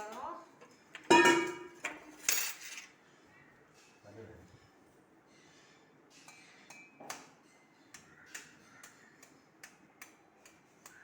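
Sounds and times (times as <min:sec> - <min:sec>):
kitchenware taps and clinks: 0:01.0 - 0:02.8.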